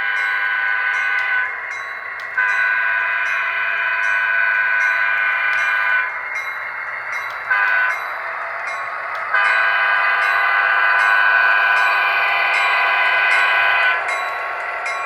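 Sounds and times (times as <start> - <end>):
model locomotive horn blasts: 0.0 - 1.4, 2.4 - 6.1, 7.5 - 8.0, 9.4 - 14.1
diesel engine sound: 0.0 - 15.0.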